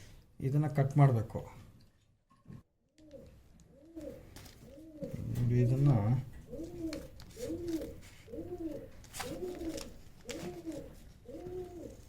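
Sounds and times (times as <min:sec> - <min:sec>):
pigeon cooing: 0:03.0 - 0:12.0.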